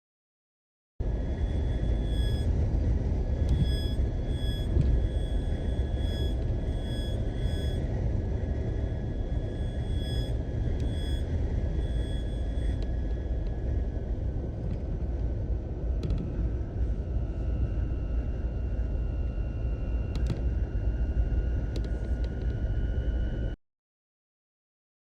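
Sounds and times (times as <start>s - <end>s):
wind and road rumble: 12.8s - 18.4s.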